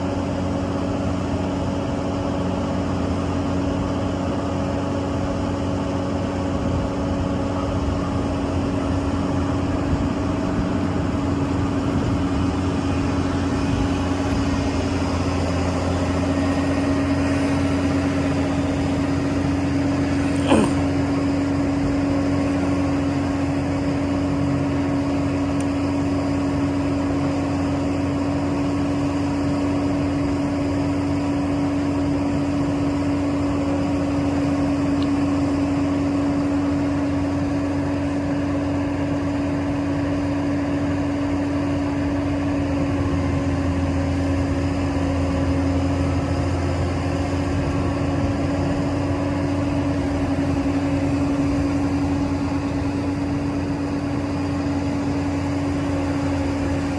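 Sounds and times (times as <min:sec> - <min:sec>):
diesel engine droning: 0:00.0 - 0:56.9.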